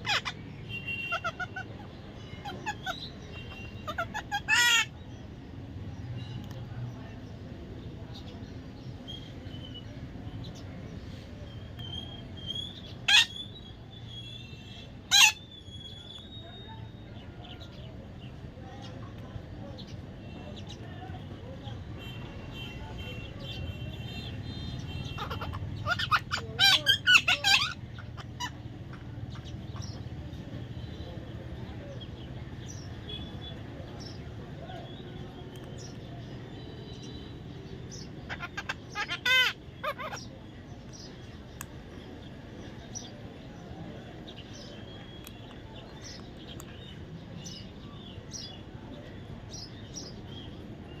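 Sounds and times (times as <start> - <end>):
parrot squawking: 0.0 - 4.9, 12.8 - 13.4, 15.0 - 15.5, 24.8 - 29.1, 38.0 - 40.3.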